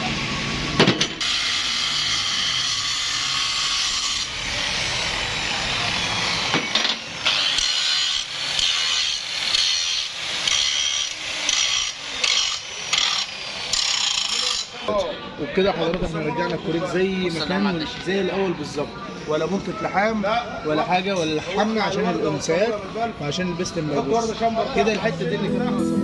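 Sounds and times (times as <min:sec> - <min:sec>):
tool scraping metal: 0:01.0 - 0:05.0, 0:05.7 - 0:14.9.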